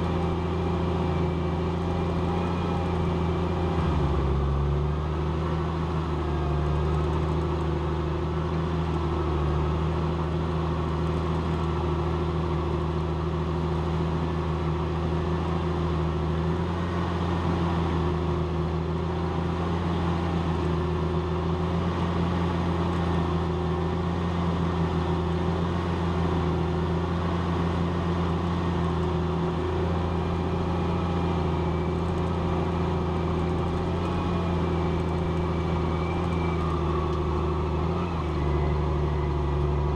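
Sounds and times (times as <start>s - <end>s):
tractor diesel engine under load: 0.0s - 39.9s.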